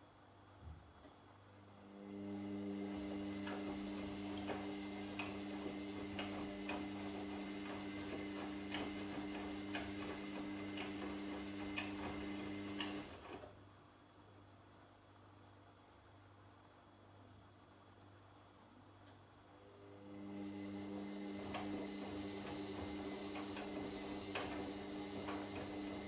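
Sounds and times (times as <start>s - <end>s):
washing machine motor humming: 1.7s - 13.4s, 19.8s - 26.0s
washing machine clicks: 3.3s - 13.1s, 21.1s - 26.0s.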